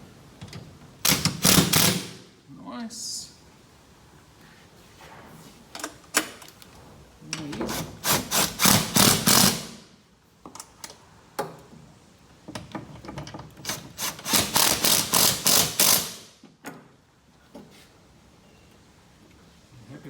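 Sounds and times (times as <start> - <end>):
ratchet tightening a bolt: 1.0 - 2.1, 7.7 - 9.7, 13.6 - 16.2
ratchet clicks: 13.7 - 16.2.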